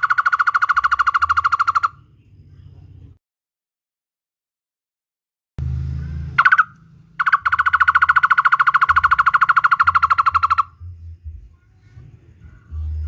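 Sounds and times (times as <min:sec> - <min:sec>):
bird calling with trill: 0:00.0 - 0:03.1, 0:06.0 - 0:11.0
faint low hum: 0:01.9 - 0:03.2, 0:08.6 - 0:13.0.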